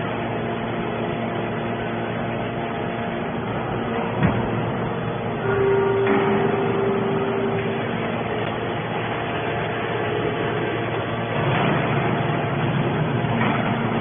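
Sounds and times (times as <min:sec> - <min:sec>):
can baling machine running: 0:03.5 - 0:14.0.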